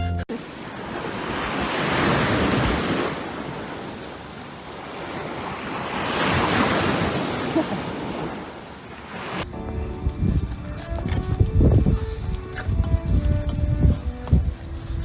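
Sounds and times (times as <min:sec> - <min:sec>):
waves washing in: 0:00.3 - 0:09.8.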